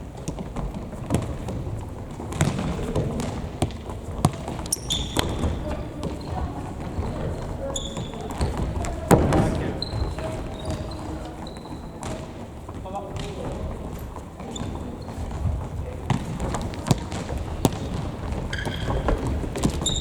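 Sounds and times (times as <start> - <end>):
ball kicked and bouncing: 0.2 - 6.3, 13.1 - 20.0
shoes squeaking on gym floor: 0.2 - 20.0.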